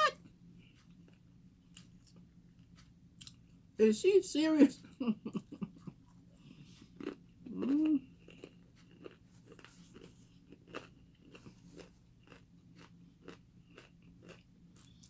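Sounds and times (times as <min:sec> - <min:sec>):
crunching chicken wings: 0:07.0 - 0:15.0
person humming: 0:07.5 - 0:08.1.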